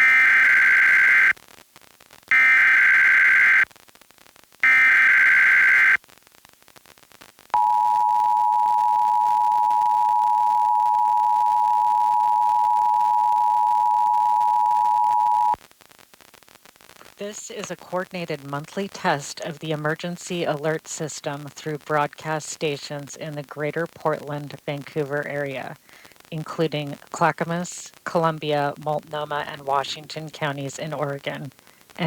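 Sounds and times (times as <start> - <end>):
steady two-tone attention signal: 7.6 - 15.6.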